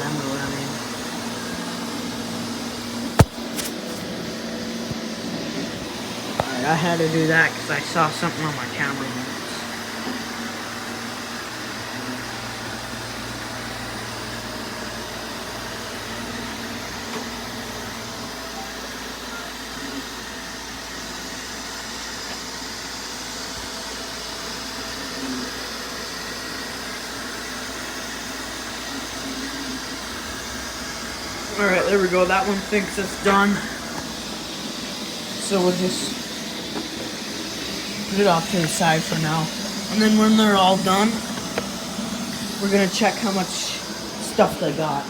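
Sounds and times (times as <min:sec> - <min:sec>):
robot vacuums whirring: 0:00.1 - 0:12.0, 0:24.9 - 0:45.0.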